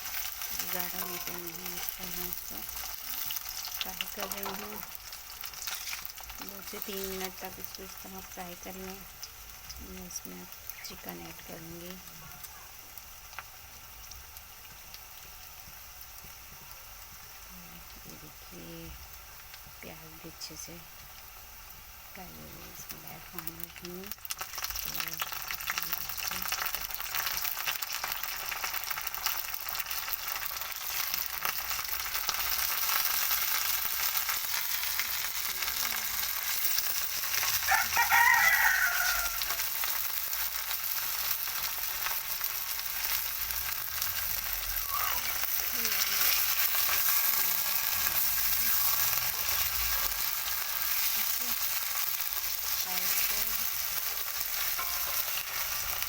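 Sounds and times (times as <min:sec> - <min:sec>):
chicken sizzling in hot oil: 0:00.0 - 0:56.0
rooster crowing: 0:37.4 - 0:39.8.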